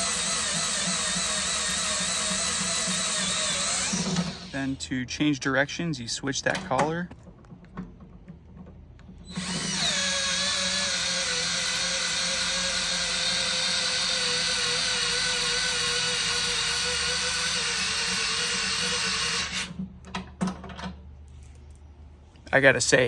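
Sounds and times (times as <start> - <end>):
cordless screwdriver motor whining: 0.0 - 4.6, 9.2 - 19.8.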